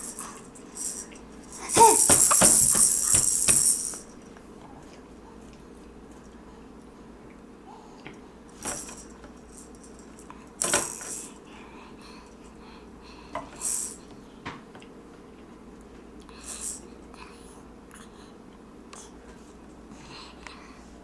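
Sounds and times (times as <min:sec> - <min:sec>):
metal jingles clattering: 0:00.0 - 0:04.2.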